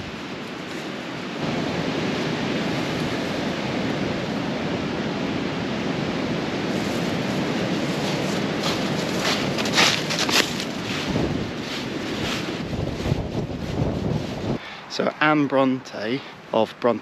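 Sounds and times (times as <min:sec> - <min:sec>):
wind rushing over microphone: 0:00.0 - 0:14.7.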